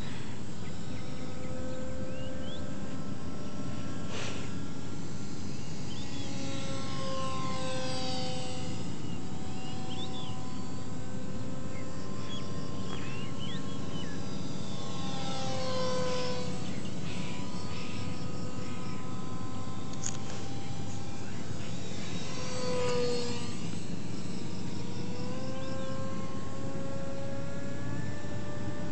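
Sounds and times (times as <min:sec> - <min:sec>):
bird chirps: 0:00.0 - 0:02.7, 0:09.0 - 0:10.6, 0:11.7 - 0:14.3
model plane motor whining: 0:00.0 - 0:28.9.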